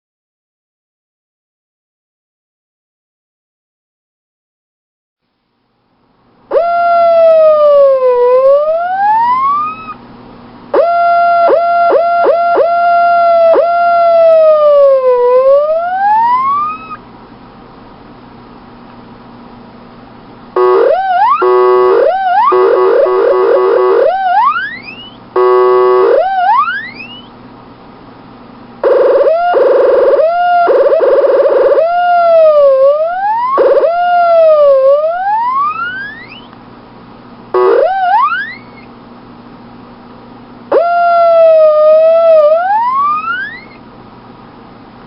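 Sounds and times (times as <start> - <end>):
electronic bird-call chirps and swoops: 9.3 - 10.0, 16.1 - 17.0, 20.9 - 25.2, 26.2 - 27.3, 35.0 - 36.5, 37.8 - 38.9, 42.0 - 43.8.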